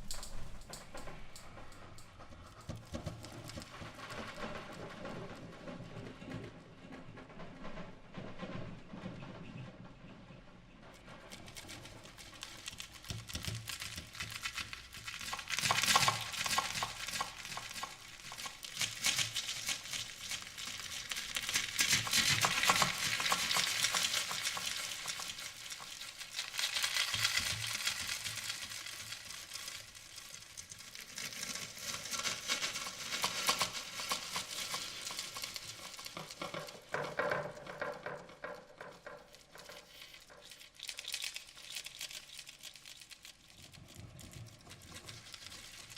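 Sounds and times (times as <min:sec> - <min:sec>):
utensil clicking and scraping: 0:00.0 - 0:04.7, 0:11.0 - 0:45.9
noodles sizzling in a frying pan: 0:11.6 - 0:37.3.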